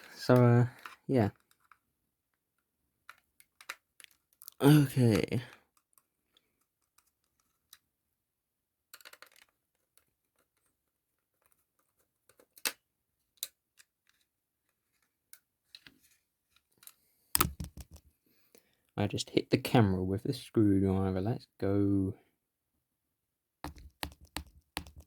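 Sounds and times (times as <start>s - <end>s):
screwdriver clicking and scraping: 17.4s - 18.0s
screwdriver knocking on camera: 17.4s - 18.0s, 23.7s - 25.0s.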